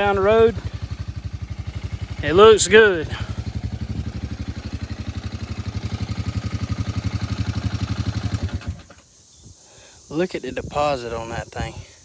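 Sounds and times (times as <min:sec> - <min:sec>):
small engine idling: 0:00.0 - 0:09.2.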